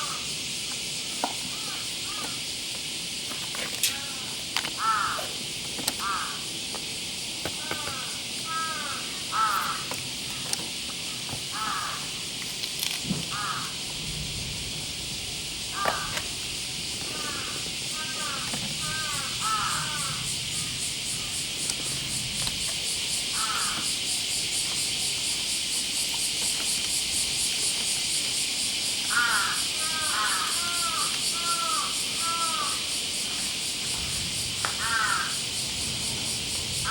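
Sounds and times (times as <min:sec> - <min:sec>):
crows cawing: 0:00.0 - 0:00.3, 0:01.5 - 0:02.5, 0:03.8 - 0:06.5, 0:07.5 - 0:12.2, 0:13.3 - 0:13.8, 0:15.7 - 0:16.4, 0:17.0 - 0:22.0, 0:23.3 - 0:24.0, 0:29.1 - 0:35.5
steady high-pitched hiss: 0:00.0 - 0:36.9.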